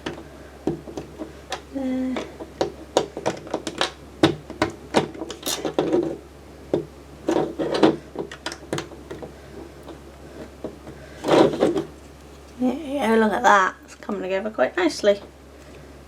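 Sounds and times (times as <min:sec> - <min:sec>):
rustling: 0:07.2 - 0:13.2.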